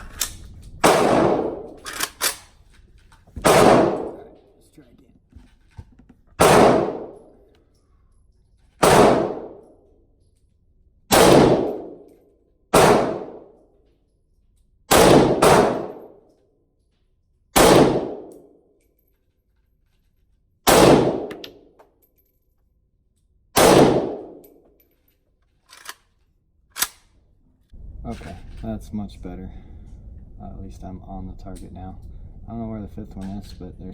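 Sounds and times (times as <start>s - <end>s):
rifle gunshots with echo: 0.8s - 2.4s, 3.4s - 4.4s, 6.4s - 7.3s, 8.8s - 9.7s, 11.1s - 12.0s, 12.7s - 13.6s, 14.9s - 16.2s, 17.6s - 18.4s, 20.7s - 21.5s, 23.6s - 24.5s.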